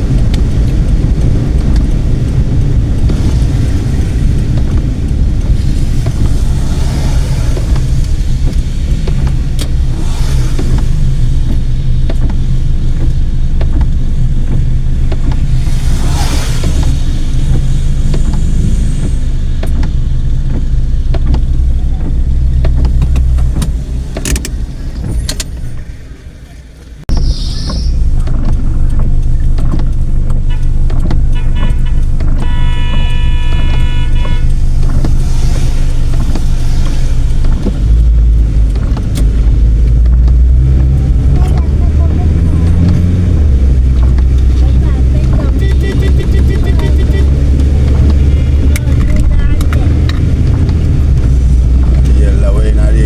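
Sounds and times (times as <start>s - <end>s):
car engine and road noise: 0.0s - 53.0s
pitched tone: 27.1s - 28.2s.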